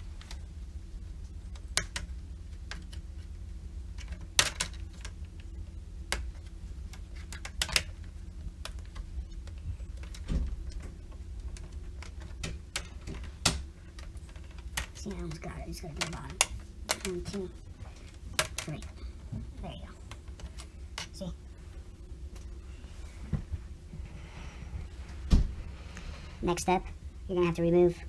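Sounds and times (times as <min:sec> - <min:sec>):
steady low hum: 0:00.0 - 0:28.0
plastic clips snapping: 0:01.6 - 0:03.0, 0:03.9 - 0:21.3.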